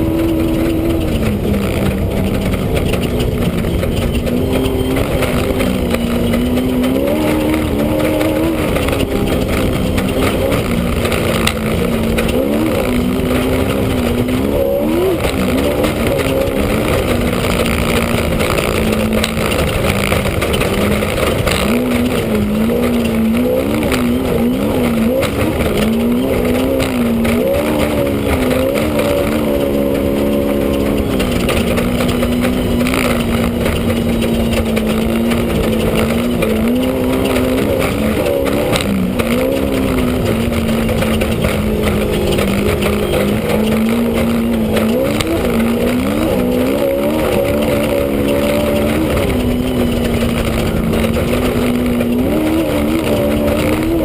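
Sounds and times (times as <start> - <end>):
engine revving from inside cab: 0.0 - 54.0
steady rushing noise: 0.0 - 54.0.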